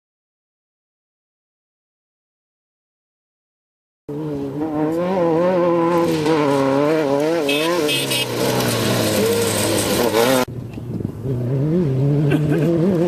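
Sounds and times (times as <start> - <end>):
race engines revving: 4.1 - 13.0.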